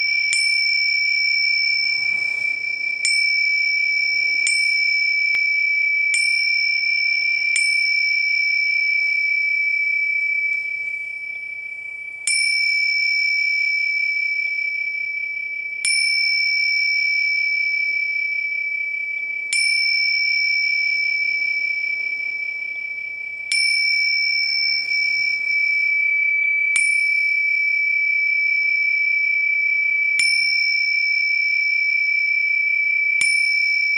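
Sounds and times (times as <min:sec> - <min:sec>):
small bell ringing: 0:00.0 - 0:33.9.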